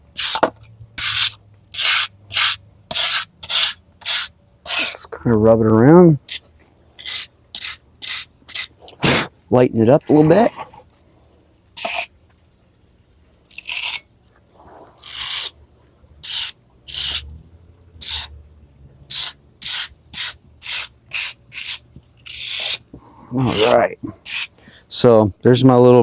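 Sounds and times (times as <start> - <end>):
wire brush scrubbing wood: 0.2 - 0.4, 1.0 - 5.0, 7.0 - 8.7, 11.8 - 12.1, 15.0 - 15.5, 16.2 - 17.2, 18.0 - 18.3, 19.1 - 22.8, 23.4 - 24.5.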